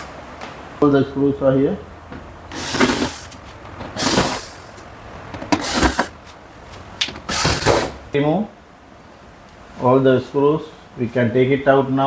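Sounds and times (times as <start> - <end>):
screws scraping on metal: 2.5 - 4.6, 5.5 - 6.2.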